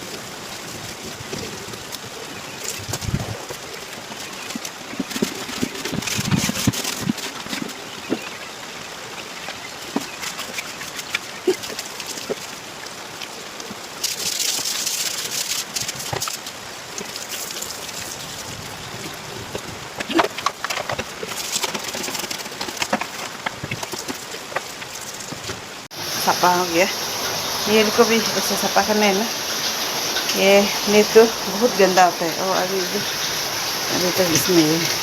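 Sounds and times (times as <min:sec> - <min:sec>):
water splashing and pouring: 0:00.0 - 0:35.0
knocks and clatters in a tub: 0:19.5 - 0:25.6.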